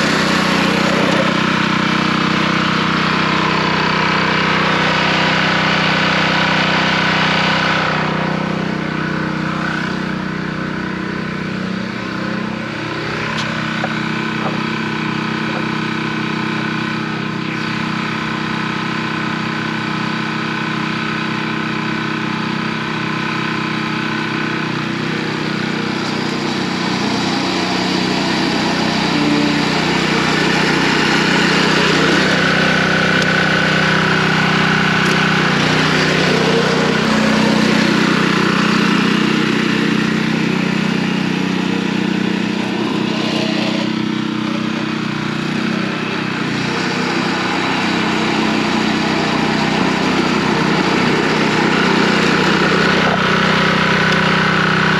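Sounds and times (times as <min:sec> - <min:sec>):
lawn mower engine running: 0:00.0 - 0:54.9.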